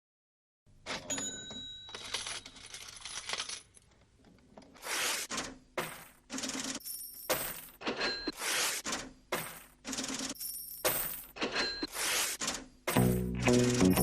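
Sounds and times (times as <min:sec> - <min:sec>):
coins clattering and jingling: 0:00.9 - 0:03.8, 0:10.3 - 0:11.7.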